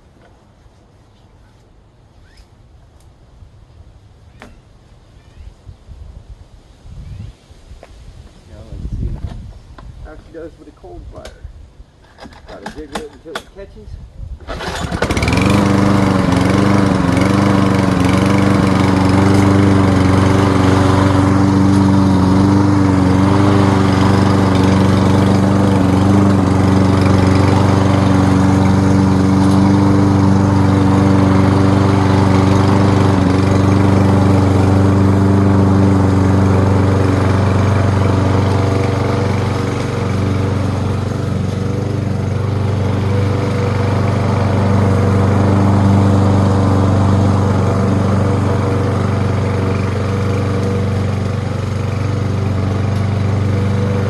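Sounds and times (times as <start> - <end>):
lawn mower engine running: 12.0 - 13.6, 14.4 - 54.0.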